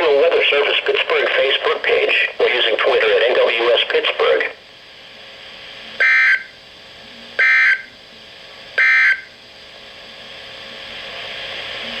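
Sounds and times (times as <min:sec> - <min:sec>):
radio hiss: 0:00.0 - 0:07.5
two-tone digital screeches: 0:07.4 - 0:07.9.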